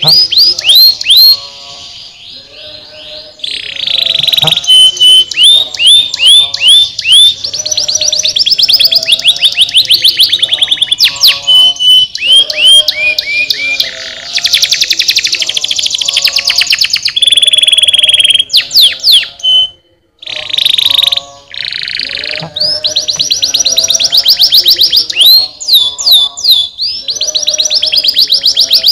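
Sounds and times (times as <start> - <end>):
canary singing trills: 0.0 - 28.9.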